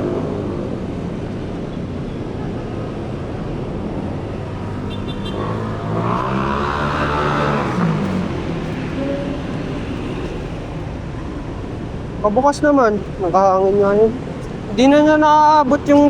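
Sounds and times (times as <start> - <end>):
traffic noise: 0.0 - 16.0
vehicle engine passing: 3.0 - 14.9.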